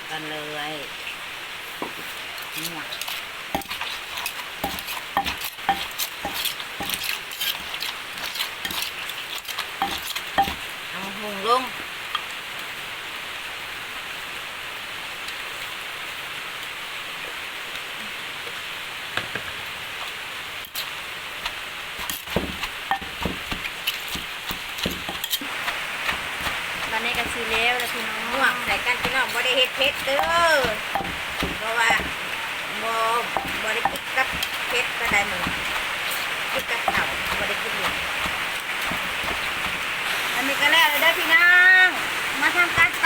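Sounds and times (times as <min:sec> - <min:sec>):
wooden pestle knocking in mortar: 0:03.6 - 0:03.8, 0:04.6 - 0:07.2, 0:09.8 - 0:10.6, 0:22.0 - 0:32.3, 0:33.3 - 0:39.8
steady hiss: 0:14.6 - 0:43.0.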